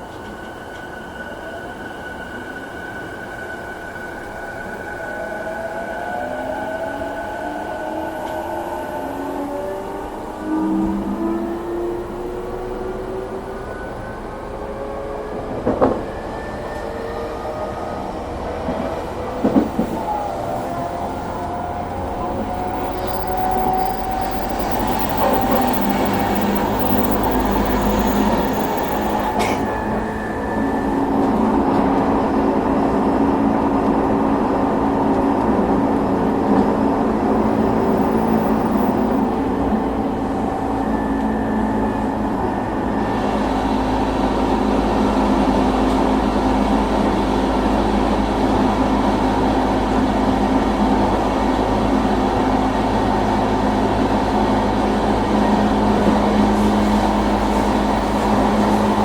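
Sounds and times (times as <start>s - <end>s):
wheel-on-rail noise: 14.7s - 59.0s
steady growling noise: 18.0s - 30.0s
train traction motor: 18.0s - 31.3s.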